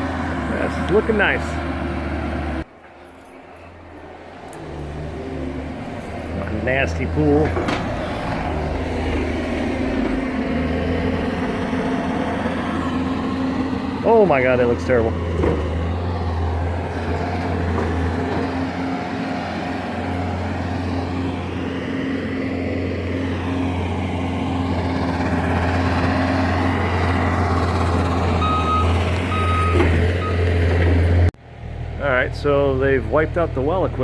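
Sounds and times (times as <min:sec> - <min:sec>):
diesel engine running: 0:00.0 - 0:34.0
backup alarm beeping: 0:28.4 - 0:30.4.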